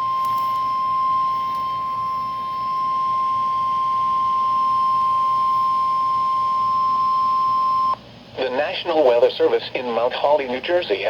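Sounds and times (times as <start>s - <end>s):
steady high-pitched alarm tone: 0.0s - 8.0s
faint radio hiss: 0.0s - 11.0s.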